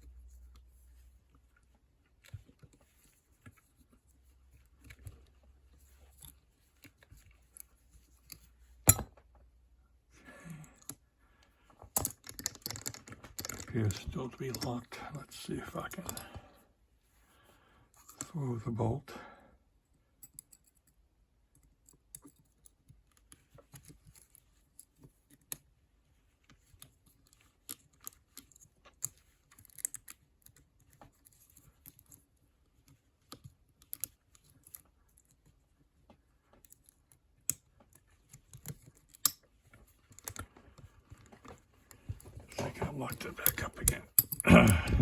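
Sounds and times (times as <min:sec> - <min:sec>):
lock pick clicking in padlock: 0:44.2 - 0:44.4.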